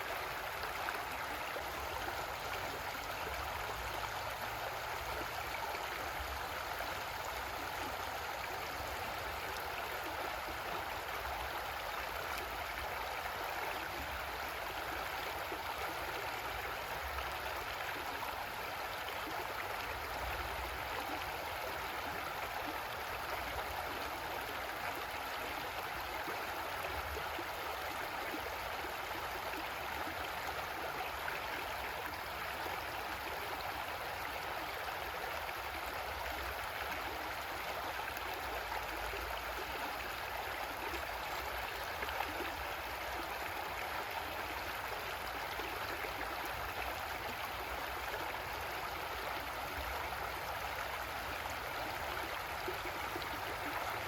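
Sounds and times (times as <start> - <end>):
creek water gurgling over rocks: 0.0 - 54.0.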